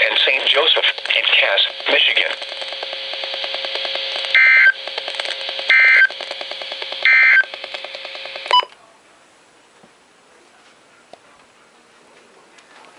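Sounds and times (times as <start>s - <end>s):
buzzy broadcast static: 0.0s - 8.6s
warbling data bursts: 0.0s - 8.6s
radio muting click: 0.0s - 8.8s.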